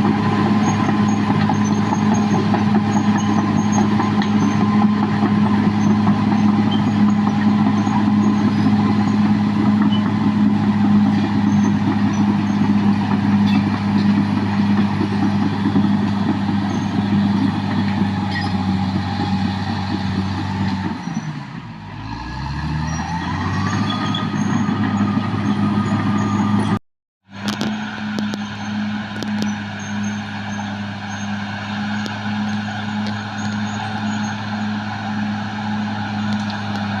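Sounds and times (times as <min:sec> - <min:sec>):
bulldozer diesel engine running: 0:00.0 - 0:37.0.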